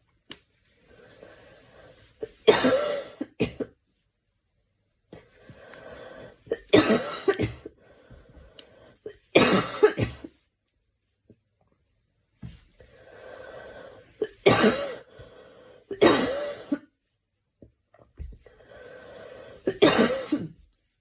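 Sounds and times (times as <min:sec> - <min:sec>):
quiet breathing: 0:00.5 - 0:02.2, 0:05.1 - 0:06.5, 0:07.7 - 0:09.2, 0:12.5 - 0:14.2, 0:15.0 - 0:16.0, 0:18.3 - 0:19.8
girl coughing: 0:02.5 - 0:03.8, 0:06.5 - 0:07.7, 0:09.1 - 0:10.3, 0:14.2 - 0:15.1, 0:15.9 - 0:16.9, 0:19.7 - 0:20.6.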